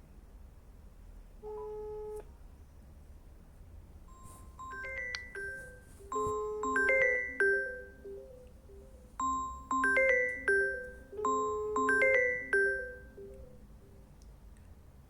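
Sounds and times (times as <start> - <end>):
marimba-like ringtone melody: 4.1 - 14.0.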